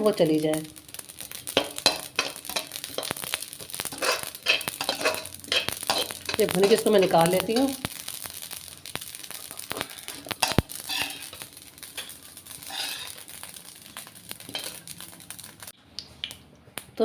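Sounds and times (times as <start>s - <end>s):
seeds scraped out of a pan: 1.5s - 15.1s.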